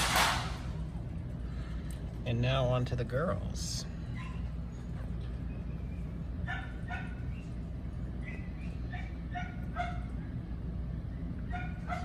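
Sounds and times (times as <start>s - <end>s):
steady low hum: 0.0s - 12.0s
puppies squeaking and whimpering: 8.2s - 9.1s.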